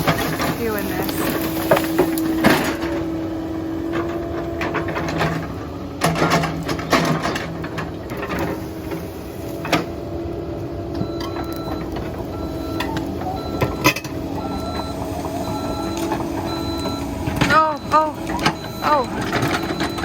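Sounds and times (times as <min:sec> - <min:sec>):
travel alarm beeping: 0:00.0 - 0:06.0, 0:10.7 - 0:20.0
diesel excavator running: 0:00.0 - 0:20.0.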